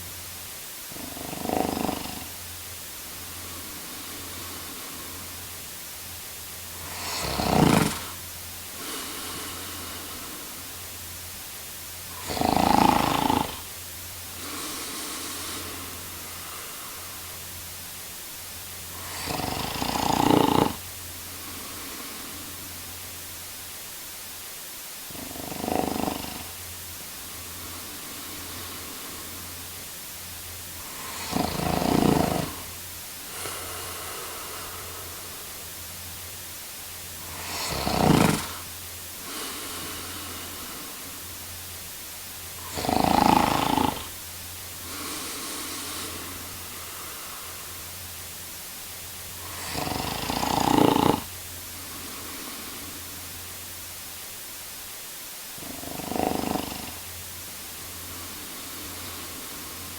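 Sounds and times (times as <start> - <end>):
soft breaths: 0.0 - 59.9
man snoring: 0.9 - 2.5, 3.1 - 5.6, 6.7 - 10.9, 12.1 - 17.4, 18.9 - 22.8, 25.1 - 26.6, 27.2 - 29.8, 30.7 - 35.7, 37.2 - 41.4, 42.5 - 44.2, 44.8 - 47.9, 49.3 - 53.3, 55.5 - 59.9.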